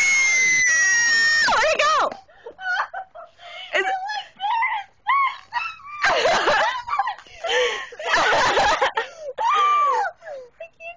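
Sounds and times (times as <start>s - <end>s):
person wailing and shrieking: 0.0s - 1.6s.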